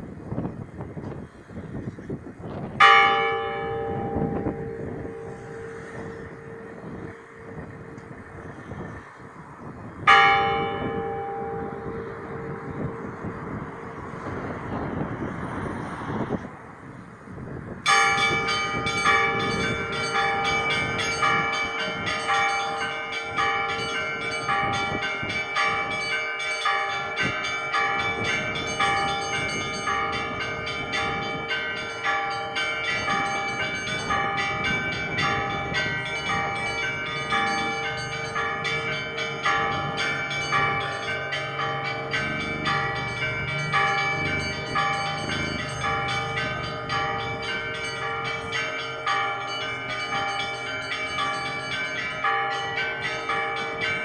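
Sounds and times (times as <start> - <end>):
church bells pealing: 2.7 - 16.1, 17.8 - 54.0
small bells repeating pattern: 17.9 - 54.0.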